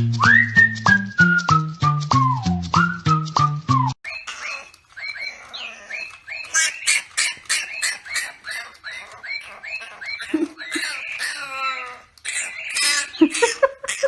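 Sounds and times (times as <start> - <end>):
young animal squeaking: 4.0 - 14.0.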